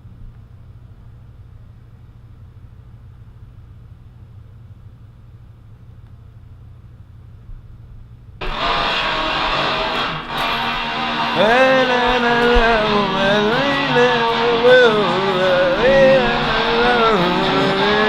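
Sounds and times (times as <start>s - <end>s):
bending guitar line: 8.4s - 18.0s
distorted electric guitar: 8.4s - 18.0s.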